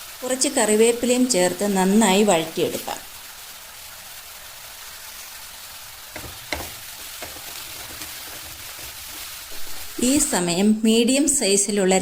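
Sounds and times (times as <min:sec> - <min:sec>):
food sizzling in a pan: 0:00.0 - 0:12.0
stirring knocks: 0:06.1 - 0:10.0.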